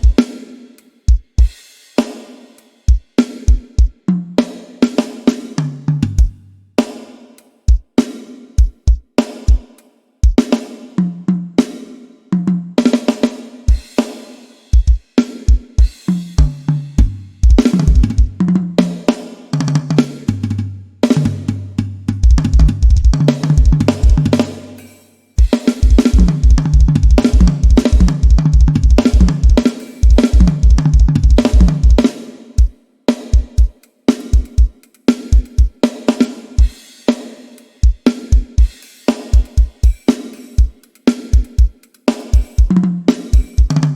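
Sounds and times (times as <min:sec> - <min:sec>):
drum kit grooves: 0:00.0 - 0:43.9
fast bass drum runs: 0:15.8 - 0:24.8, 0:25.4 - 0:32.1, 0:42.4 - 0:43.9
tom fills: 0:16.4 - 0:18.7, 0:25.8 - 0:32.0.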